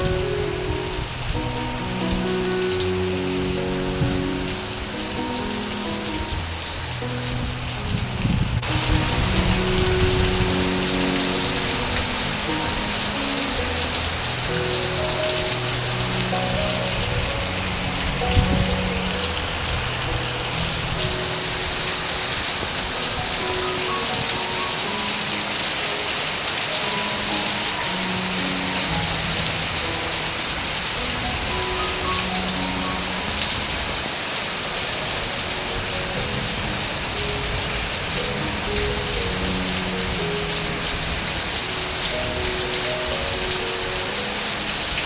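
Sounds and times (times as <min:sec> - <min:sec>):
heavy rain pouring: 0:00.0 - 0:45.0.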